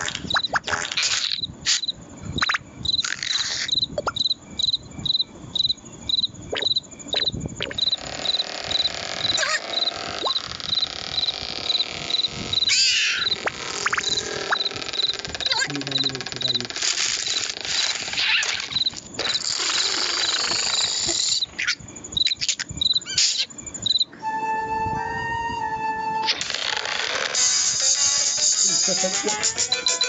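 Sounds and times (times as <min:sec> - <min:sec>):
crickets chirping: 0:00.0 - 0:30.0
short squeaks and knocks: 0:06.6 - 0:21.0.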